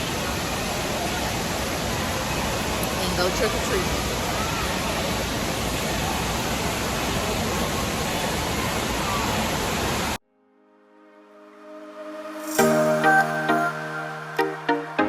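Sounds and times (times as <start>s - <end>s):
rushing water: 0.0s - 10.2s
soft music: 10.2s - 15.0s.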